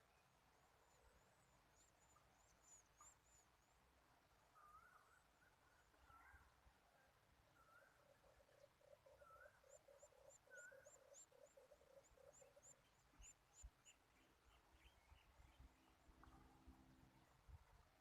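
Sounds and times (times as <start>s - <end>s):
bird chirping: 0.0s - 3.8s, 7.6s - 16.6s.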